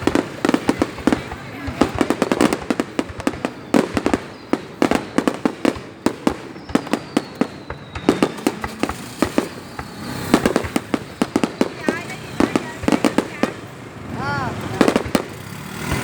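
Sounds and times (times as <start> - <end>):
fireworks bangs and pops: 0.0 - 16.0
faint falling whistle: 6.6 - 8.5.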